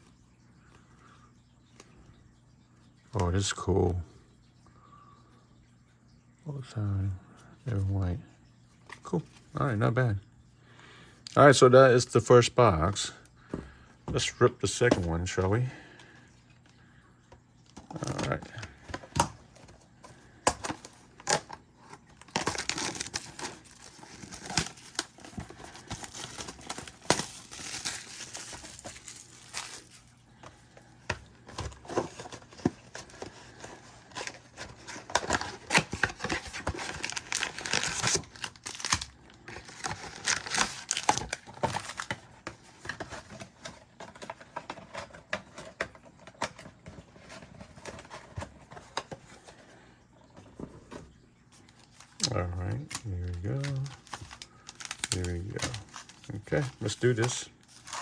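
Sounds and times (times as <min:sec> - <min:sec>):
packaging tearing and crinkling: 0:20.4 - 0:30.2, 0:31.5 - 0:44.1, 0:51.6 - 0:58.0.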